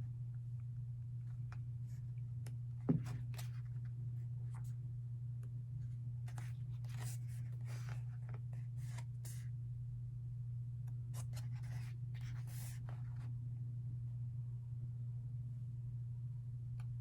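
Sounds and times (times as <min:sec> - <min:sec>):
steady low hum: 0:00.0 - 0:17.0
paper pages rustling: 0:02.9 - 0:03.8, 0:06.3 - 0:09.4.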